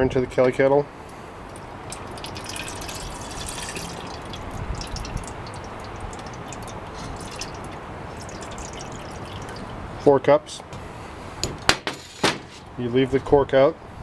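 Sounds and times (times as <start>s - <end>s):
water pouring into kettle: 1.9s - 9.8s.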